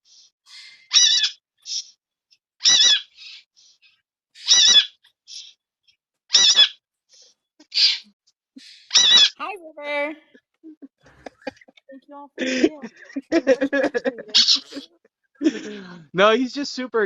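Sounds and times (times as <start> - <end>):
parrot chirps: 0.5 - 2.0, 2.6 - 3.5, 4.4 - 5.6, 6.3 - 6.8, 7.6 - 8.1, 8.8 - 9.4
parrot screeching: 0.8 - 1.9, 2.6 - 3.4, 4.4 - 5.5, 6.3 - 6.8, 7.7 - 8.0, 8.9 - 9.4, 14.3 - 14.8.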